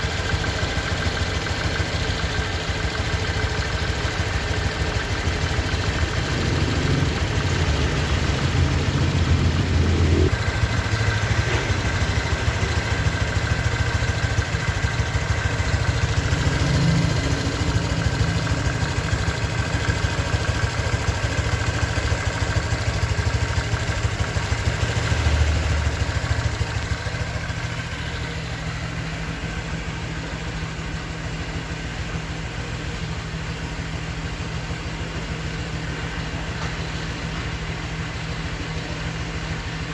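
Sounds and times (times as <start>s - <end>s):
scooter engine idling: 0.0s - 39.9s.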